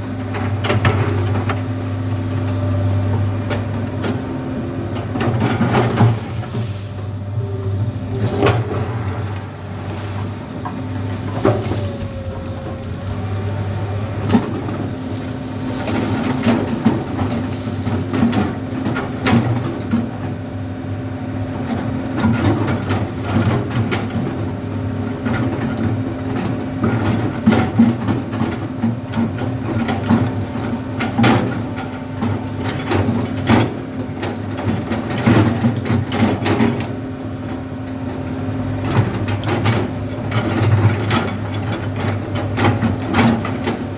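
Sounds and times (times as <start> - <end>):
excavator diesel engine running: 0.0 - 43.9
bucket digging gravel clatter: 5.2 - 19.8.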